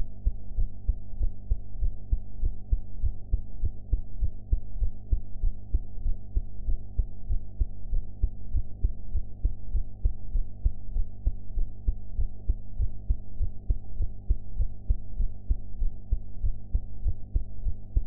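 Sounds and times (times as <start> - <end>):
muffled heartbeat: 0.0 - 18.0
steady low hum: 0.0 - 18.0.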